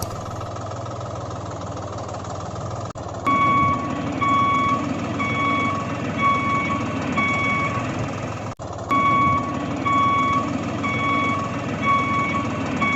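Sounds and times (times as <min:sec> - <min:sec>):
engine running: 0:00.0 - 0:12.9
vehicle reversing alarm beeping: 0:03.2 - 0:08.0, 0:08.9 - 0:12.9.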